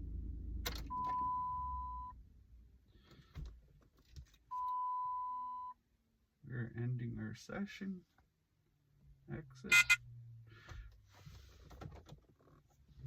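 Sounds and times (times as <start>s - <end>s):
long electronic beeps: 9.7s - 10.0s.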